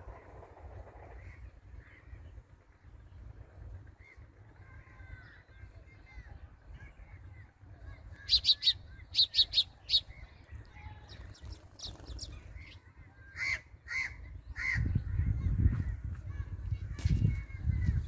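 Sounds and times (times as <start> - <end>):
low rumble: 0.0 - 13.2
birds chirping: 0.0 - 15.9
harsh bird calls: 7.8 - 15.4.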